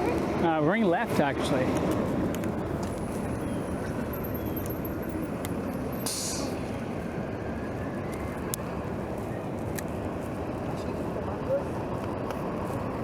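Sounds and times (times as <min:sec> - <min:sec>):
bicycle riding wind and road noise: 0:00.0 - 0:13.0
short sharp hiss: 0:06.0 - 0:06.6.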